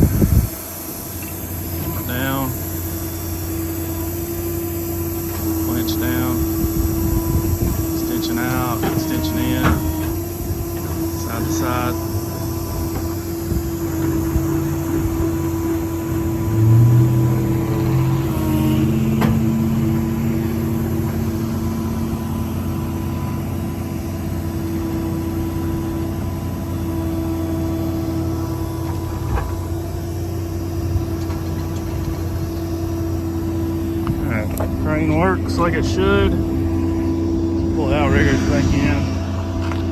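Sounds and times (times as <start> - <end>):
diesel engine running: 0.0 - 39.9
hydraulic pump tones: 0.0 - 39.9.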